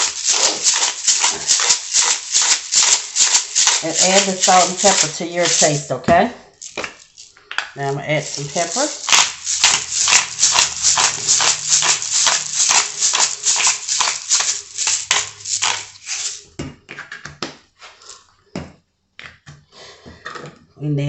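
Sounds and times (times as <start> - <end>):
pepper grinder rasping: 0.0 - 6.0, 6.6 - 7.5, 8.1 - 16.5.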